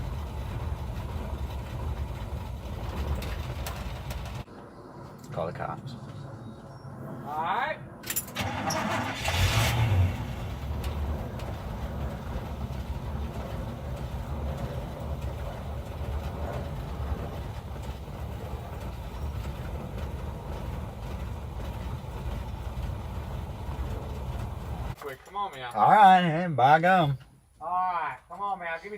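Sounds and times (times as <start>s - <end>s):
truck engine idling: 0.0s - 4.4s, 8.4s - 25.0s.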